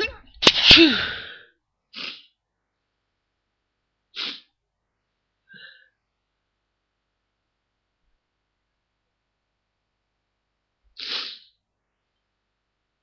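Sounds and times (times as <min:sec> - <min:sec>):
person sneezing: 0:00.0 - 0:02.3, 0:04.2 - 0:04.5, 0:11.0 - 0:11.5.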